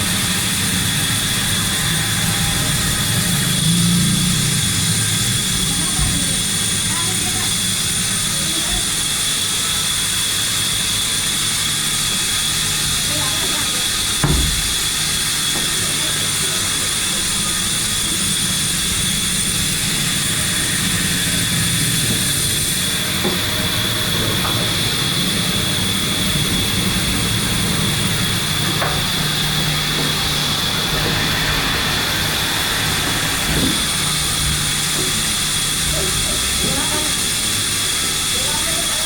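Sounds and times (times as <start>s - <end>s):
high-pitched machine whine: 0.0s - 39.0s
machinery low hum: 0.0s - 39.0s.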